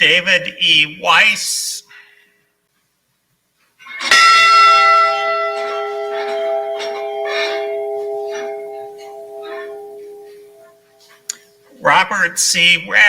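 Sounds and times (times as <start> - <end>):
bell tolling: 4.1 - 11.0.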